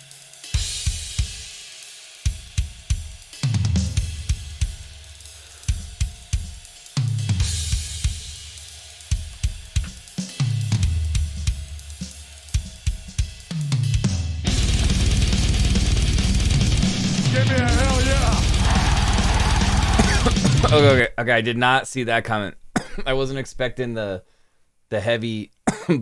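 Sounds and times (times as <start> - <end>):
metal drums and cymbals: 0.0 - 21.1
full metal band: 14.4 - 21.1
deep sliding bass notes: 14.5 - 21.0.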